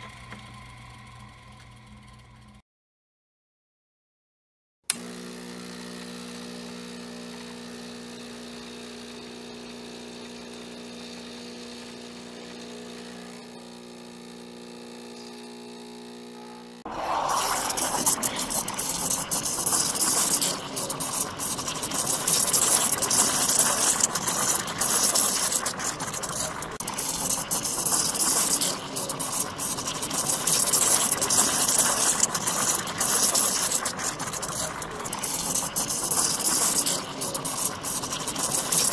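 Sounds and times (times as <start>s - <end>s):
espresso machine humming: 0.0s - 2.6s, 4.9s - 38.9s
steam wand hissing: 16.9s - 38.9s.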